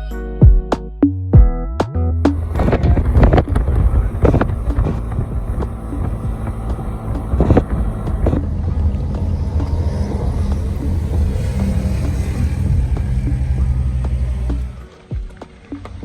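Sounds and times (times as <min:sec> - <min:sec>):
wind on microphone: 0:02.3 - 0:14.8
moving vehicle rumble: 0:02.3 - 0:16.0
sharp knocks and bumps: 0:02.3 - 0:16.0.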